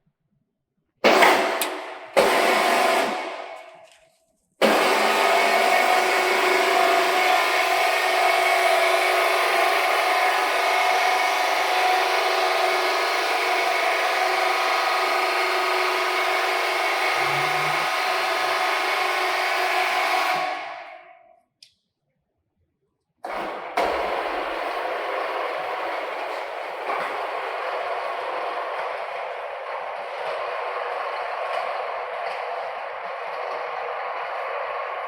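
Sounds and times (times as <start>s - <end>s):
machine motor whirring hum: 4.6s - 21.0s.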